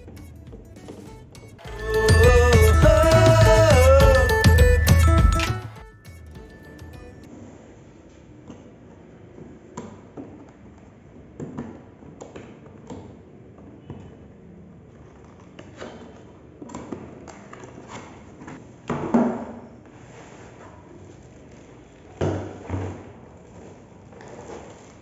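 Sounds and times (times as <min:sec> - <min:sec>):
computer parts tapping and clicking: 0:04.0 - 0:07.1.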